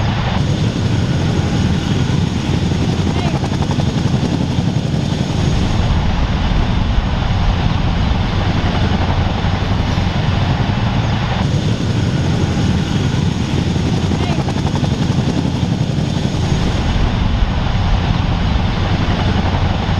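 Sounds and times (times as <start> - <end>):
helicopter rotor and turbine noise: 0.0 - 19.9.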